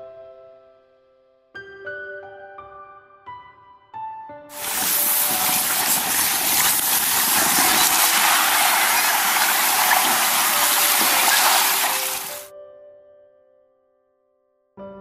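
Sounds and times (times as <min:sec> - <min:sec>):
soft piano music: 0:00.0 - 0:15.0
rushing gushing water: 0:04.5 - 0:12.5.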